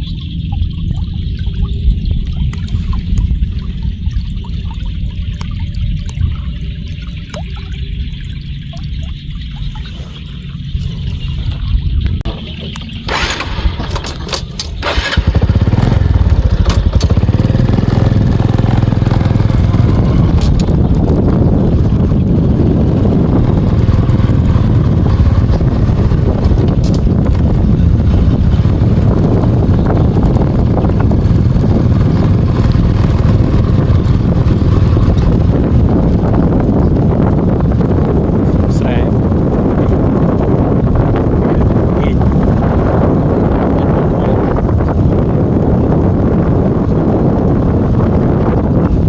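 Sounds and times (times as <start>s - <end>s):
motorcycle engine rumbling: 0.0s - 49.0s
clicks and knocks: 12.2s - 15.1s.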